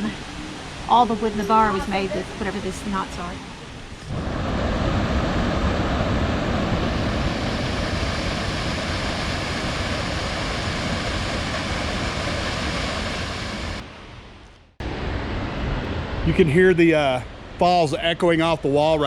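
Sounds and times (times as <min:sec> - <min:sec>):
waterfall roaring: 0:00.0 - 0:14.1.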